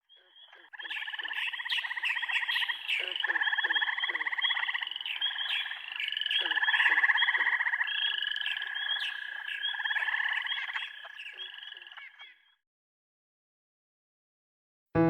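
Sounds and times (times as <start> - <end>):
frogs calling: 0.0 - 12.6.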